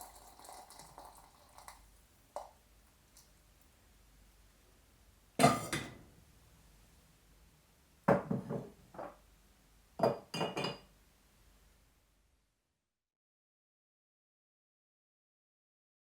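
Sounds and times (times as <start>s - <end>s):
kitchenware clinking and knocking: 5.4s - 6.0s, 8.1s - 9.2s, 10.0s - 10.9s.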